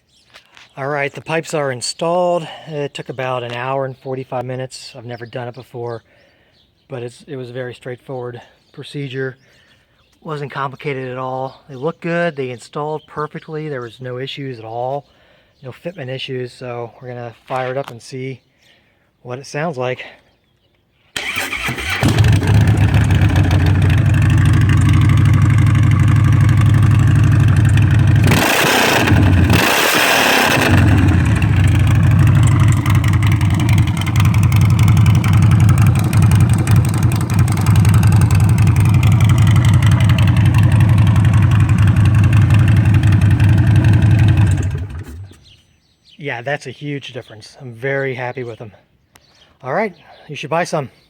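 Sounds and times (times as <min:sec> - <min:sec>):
motorcycle engine idling and revving: 0:21.2 - 0:45.6.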